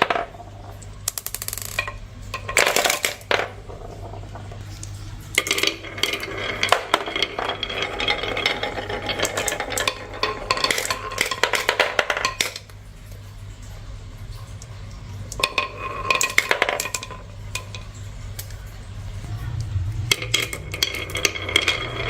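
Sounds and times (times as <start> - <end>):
marbles clattering down a run: 0.0 - 12.8, 15.2 - 22.0
low hum: 18.3 - 22.0.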